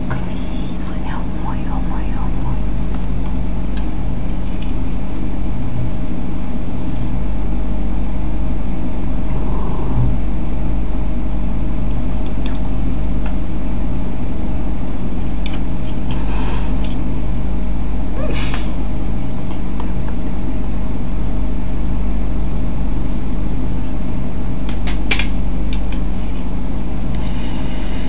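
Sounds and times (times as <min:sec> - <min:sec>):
cat purring loudly: 0:09.2 - 0:10.7.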